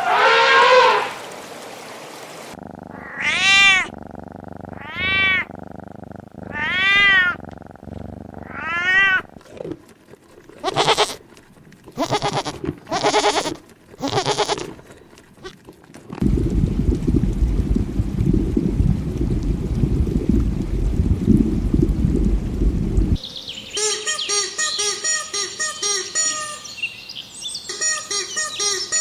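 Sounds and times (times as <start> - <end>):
cat meowing: 3.0 - 3.9, 4.8 - 5.5, 6.5 - 7.4, 8.5 - 9.3, 10.6 - 11.2, 12.0 - 14.7.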